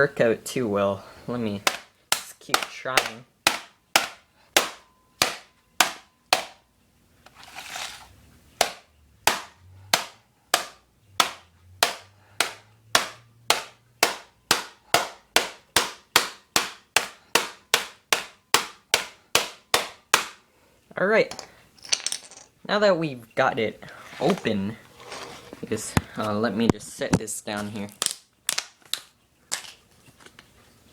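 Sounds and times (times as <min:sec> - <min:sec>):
hammer striking laptop case: 0:01.7 - 0:06.6, 0:08.6 - 0:20.4
scraping rustle: 0:07.2 - 0:08.2, 0:23.9 - 0:27.0.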